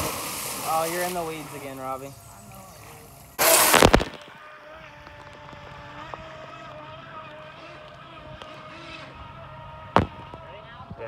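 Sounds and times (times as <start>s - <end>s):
small boat motor whining: 0.0s - 11.0s
loud rush: 3.4s - 4.2s.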